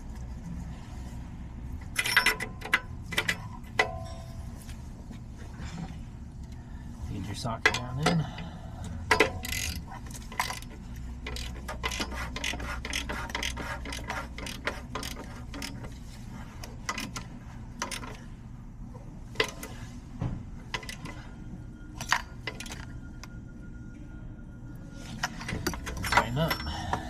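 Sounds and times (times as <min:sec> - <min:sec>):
ratchet wrench clicking: 0:09.1 - 0:10.7.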